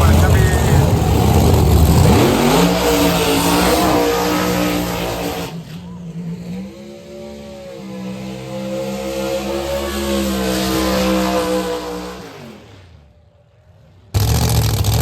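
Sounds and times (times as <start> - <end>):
steady engine drone: 0.0 - 4.9
engine rising in pitch: 0.0 - 13.2
race car engine at full throttle: 0.0 - 15.0.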